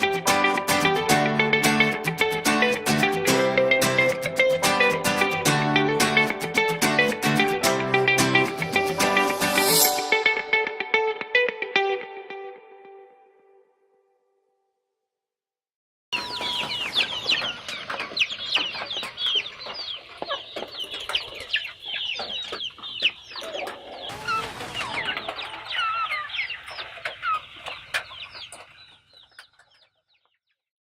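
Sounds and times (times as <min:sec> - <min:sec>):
chickens clucking and chirping: 0:16.2 - 0:30.6.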